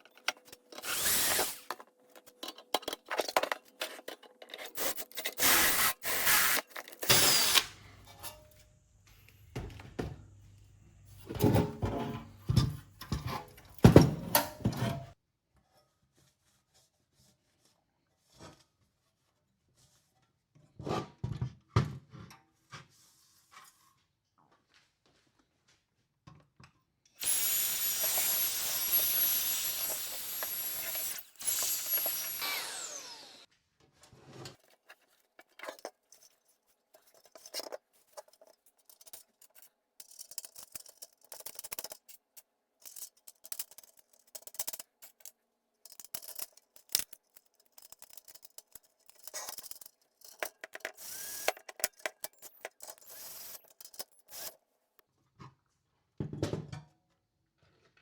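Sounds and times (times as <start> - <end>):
metal and plastic parts handled: 0.0 - 5.5, 6.4 - 8.6, 34.4 - 54.7
power tool motor whining: 0.8 - 1.7, 5.4 - 7.8, 27.2 - 33.5, 51.0 - 51.6.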